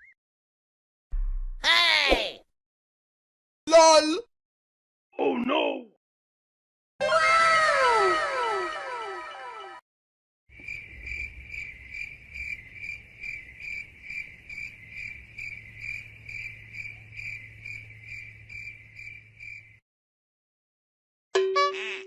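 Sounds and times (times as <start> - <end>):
crickets chirping: 10.5 - 19.8.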